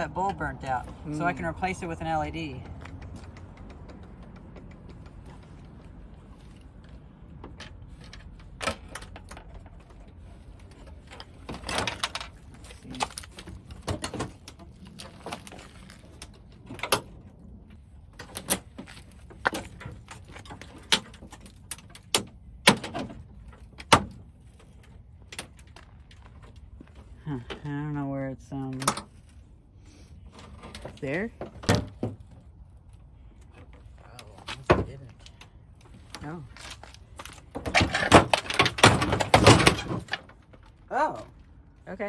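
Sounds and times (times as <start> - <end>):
plastic and metal parts rattling: 7.3 - 17.2, 18.0 - 27.0, 33.5 - 40.8.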